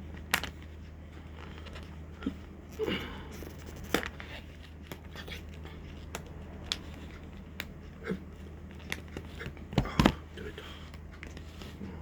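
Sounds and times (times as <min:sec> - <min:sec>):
steady low hum: 0:00.0 - 0:12.0
plastic food container clicking: 0:08.8 - 0:10.3.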